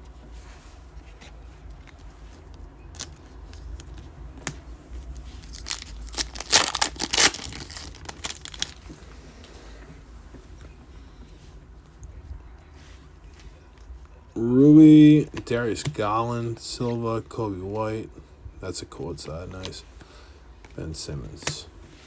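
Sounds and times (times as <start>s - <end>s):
foil wrapper tearing and crinkling: 3.0s - 3.2s, 5.4s - 8.9s.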